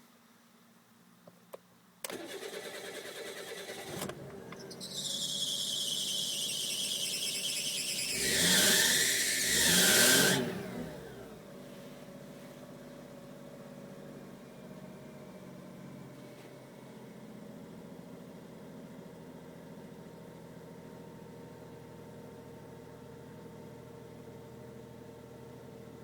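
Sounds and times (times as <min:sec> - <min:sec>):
engine cranking and starting: 0:02.1 - 0:10.9
high-pitched belt squeal: 0:04.6 - 0:10.4.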